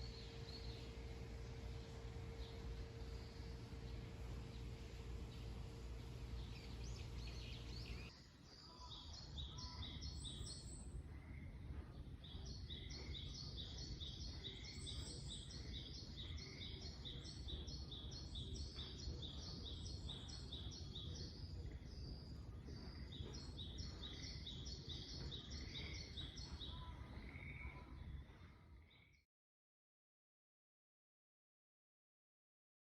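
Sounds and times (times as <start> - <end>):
steady low rumble: 0.0 - 8.1
low hum with faint tone: 0.0 - 29.1
birds chirping: 0.0 - 29.2.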